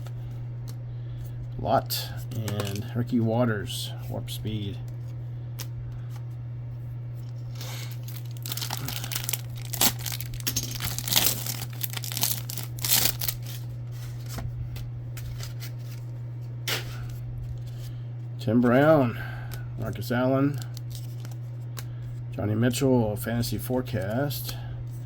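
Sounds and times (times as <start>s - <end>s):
steady low hum: 0.0s - 25.0s
wrapper tearing and crinkling: 2.5s - 2.8s, 7.5s - 14.2s, 20.5s - 21.4s.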